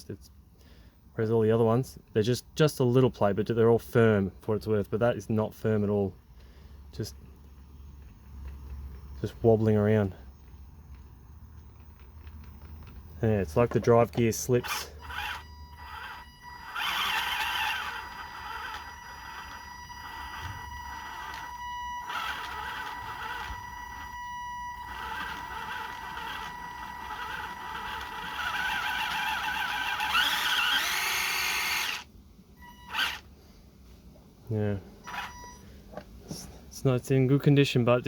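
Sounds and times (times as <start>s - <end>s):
steady high whine: 7.8s - 37.1s
toy car motor whirring: 14.1s - 33.3s, 35.0s - 35.6s.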